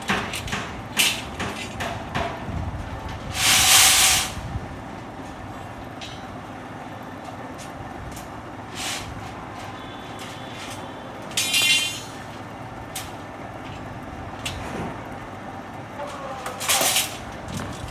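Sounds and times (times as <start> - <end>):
rebar cutting machine running: 3.1 - 17.9
loud metallic clank: 10.2 - 12.3.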